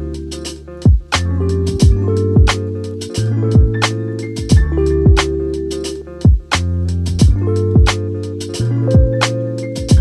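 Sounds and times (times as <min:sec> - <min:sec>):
background music with drum beat: 0:00.0 - 0:10.0.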